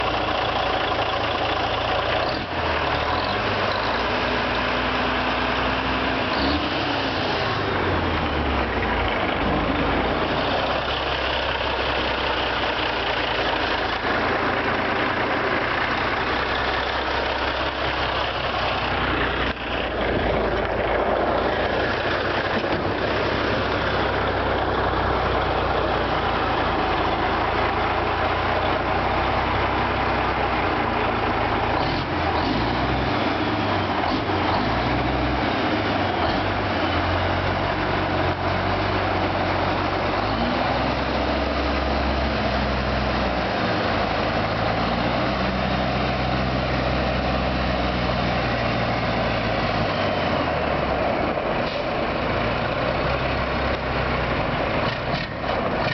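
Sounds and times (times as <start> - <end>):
diesel truck engine running: 0.0 - 55.9.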